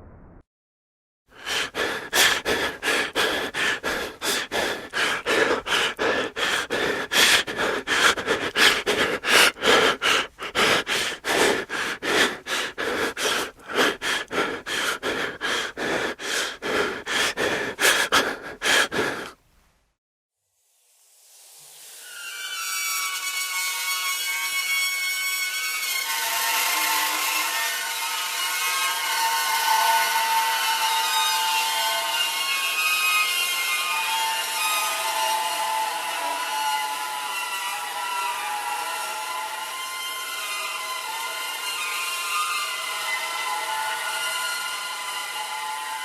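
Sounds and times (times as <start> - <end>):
rapid panting breaths: 1.4 - 19.5.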